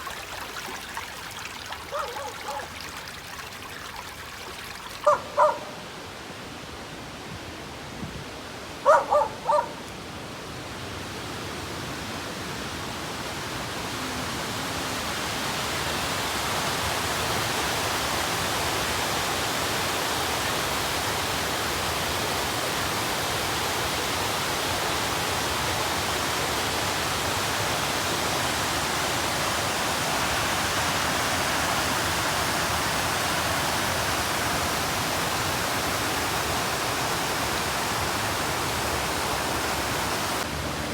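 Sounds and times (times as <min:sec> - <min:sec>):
rushing water: 0:00.0 - 0:40.9
animal calls: 0:01.9 - 0:02.8, 0:08.9 - 0:09.8.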